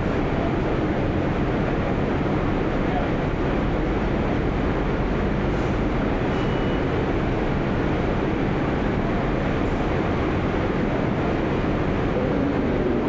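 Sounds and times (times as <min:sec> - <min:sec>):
subway train rumble: 0:00.0 - 0:13.0
faint high squeal: 0:06.3 - 0:06.9.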